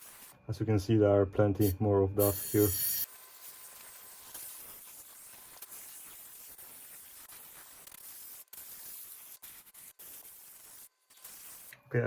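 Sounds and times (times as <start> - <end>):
compressed air spraying hiss: 1.6 - 3.1.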